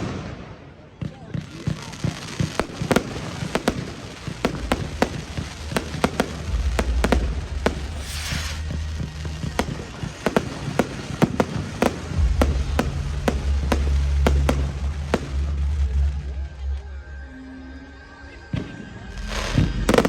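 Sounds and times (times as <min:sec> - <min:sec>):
fireworks bangs and cracks: 0:00.0 - 0:16.6, 0:18.6 - 0:20.0
fireworks whooshing burst: 0:01.5 - 0:16.2, 0:19.2 - 0:20.0.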